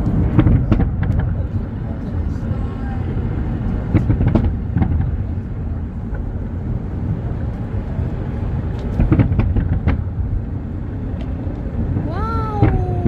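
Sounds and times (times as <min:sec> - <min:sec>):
low rumble: 0:00.0 - 0:13.0
firework bangs and pops: 0:00.1 - 0:01.5, 0:03.9 - 0:05.4, 0:08.8 - 0:10.1.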